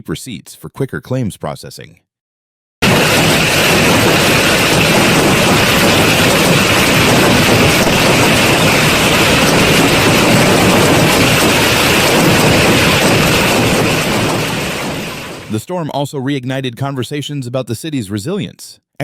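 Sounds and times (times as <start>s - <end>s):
heavy hail and rain: 2.8s - 15.6s.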